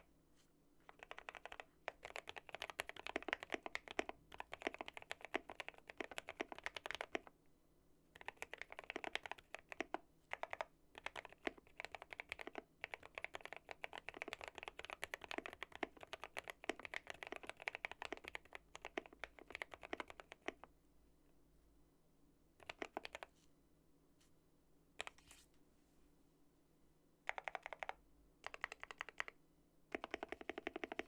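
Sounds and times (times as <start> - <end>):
fast mechanical keyboard typing: 0.9 - 7.2, 8.2 - 20.6, 22.6 - 23.3, 27.3 - 31.0.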